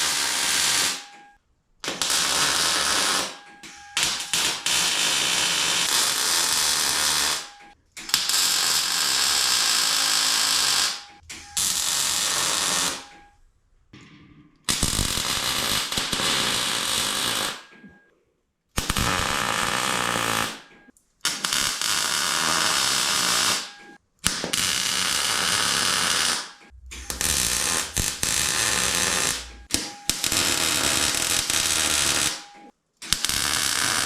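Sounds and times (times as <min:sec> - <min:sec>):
welding arc crackling: 0:01.8 - 0:03.4, 0:04.0 - 0:07.5, 0:08.1 - 0:11.0, 0:11.6 - 0:13.0, 0:14.7 - 0:17.6, 0:18.8 - 0:32.4, 0:33.1 - 0:34.0.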